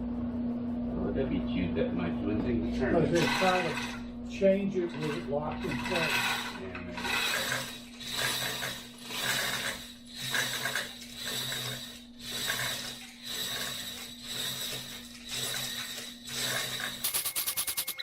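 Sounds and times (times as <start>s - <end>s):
steady low hum: 0.0s - 18.0s
ratchet wrench ratcheting: 5.0s - 18.0s.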